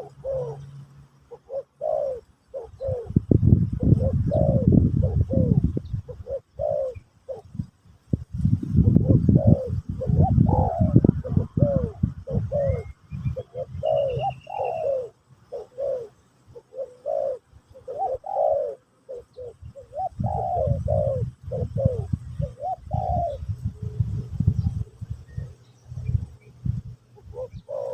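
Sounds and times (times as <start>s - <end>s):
dove cooing: 0.0s - 7.8s, 8.7s - 26.4s, 27.0s - 27.9s
small bird chirping: 8.5s - 27.9s.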